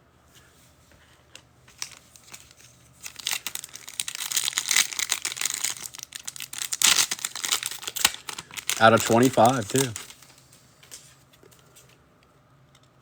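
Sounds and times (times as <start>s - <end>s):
plastic wrapper crinkling: 1.7s - 11.5s.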